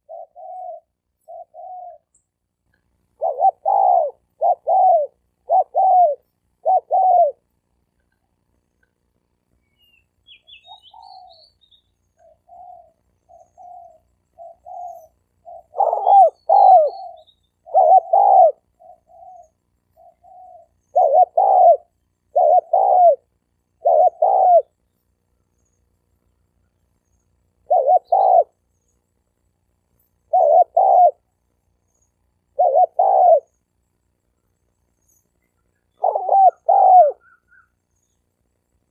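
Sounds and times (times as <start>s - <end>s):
dove cooing: 0.0s - 2.1s, 3.2s - 7.5s, 10.5s - 11.6s, 12.2s - 24.8s, 27.6s - 28.6s, 30.2s - 31.3s, 32.5s - 33.6s, 35.8s - 37.8s
faint high chirps: 8.0s - 38.9s.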